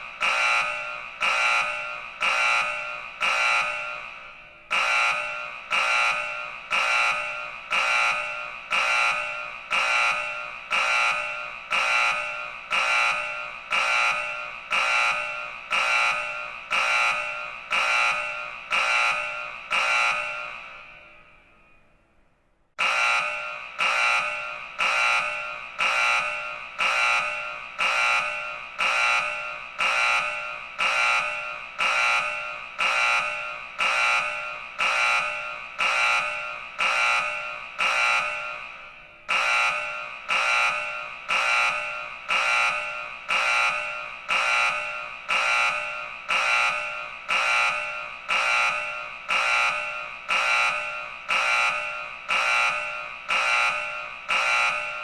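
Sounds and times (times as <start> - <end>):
emergency alert tone: 0.0 - 21.9, 22.8 - 55.0.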